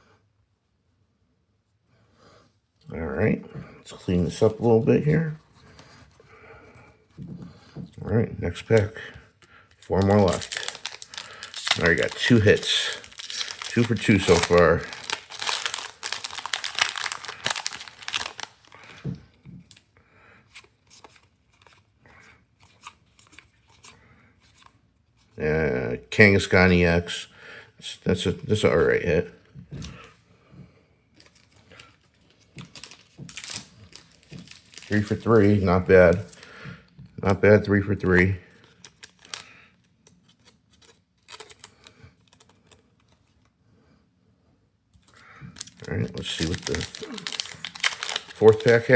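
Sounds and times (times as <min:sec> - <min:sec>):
foil wrapper tearing and crinkling: 0:09.7 - 0:19.0, 0:31.2 - 0:36.5, 0:38.1 - 0:43.2, 0:45.1 - 0:48.9
cards clicking and rustling: 0:09.7 - 0:19.9, 0:31.2 - 0:36.5, 0:38.1 - 0:43.5, 0:45.0 - 0:48.9.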